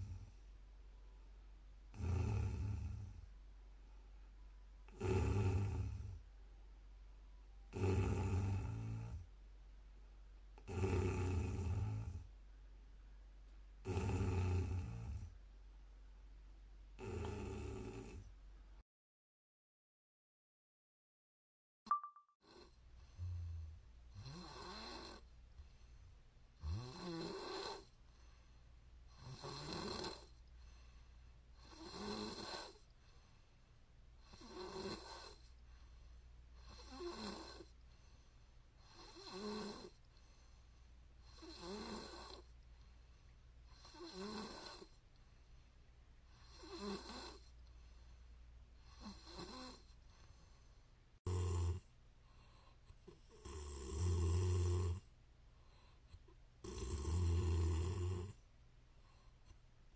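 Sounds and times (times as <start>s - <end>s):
woman snoring: 1.9s - 3.2s, 4.9s - 6.2s, 7.7s - 9.3s, 10.6s - 12.3s, 13.8s - 15.3s, 17.0s - 18.3s, 22.5s - 25.3s, 26.6s - 27.9s, 29.1s - 30.4s, 31.6s - 32.9s, 34.2s - 35.5s, 36.6s - 37.7s, 38.8s - 40.0s, 41.2s - 42.5s, 43.7s - 45.0s, 46.3s - 47.5s, 48.8s - 49.9s, 51.2s - 51.9s, 53.1s - 55.1s, 56.6s - 58.4s.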